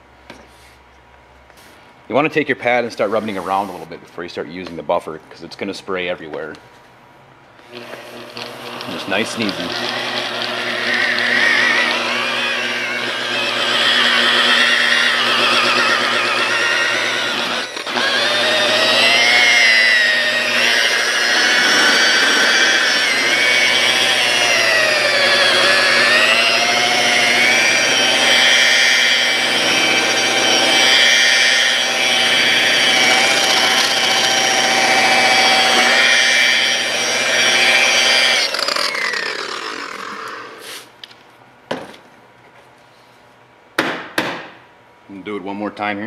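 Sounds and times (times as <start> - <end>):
rotary buffer whining: 7.6 - 40.6
sharp knocks: 43.8 - 44.6.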